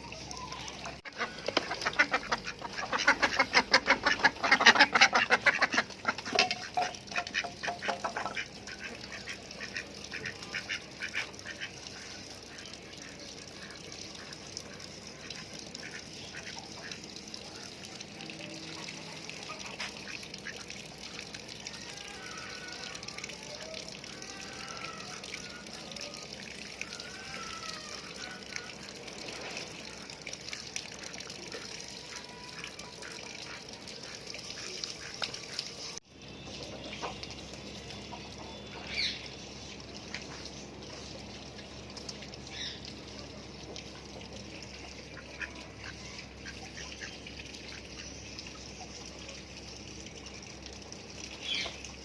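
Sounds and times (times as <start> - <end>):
ducks quacking: 0.9 - 14.4.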